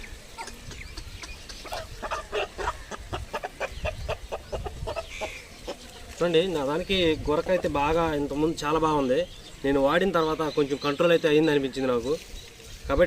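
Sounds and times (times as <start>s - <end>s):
rooster clucking rapidly: 0.5s - 5.8s.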